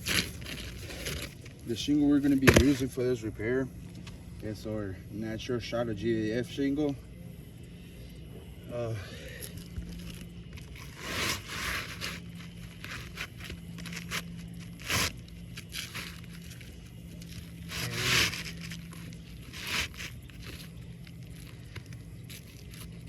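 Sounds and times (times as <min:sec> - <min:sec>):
shingles scraping and rustling: 0:00.0 - 0:02.9, 0:09.9 - 0:23.0
steady low hum: 0:00.0 - 0:23.0.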